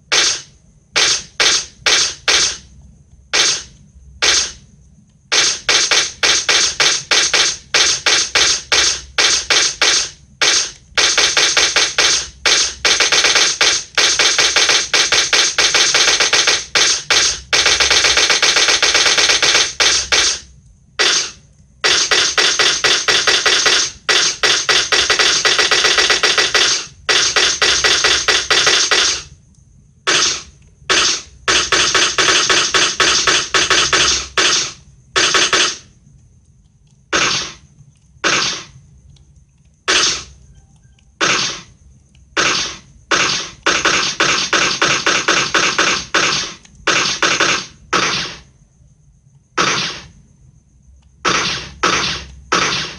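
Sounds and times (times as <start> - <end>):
automatic gunfire: 0.1 - 2.7, 3.3 - 4.6, 5.3 - 29.3, 30.1 - 35.9, 37.1 - 37.6, 38.2 - 38.8, 39.9 - 40.3, 41.2 - 41.7, 42.4 - 48.5, 49.6 - 50.1, 51.2 - 52.9.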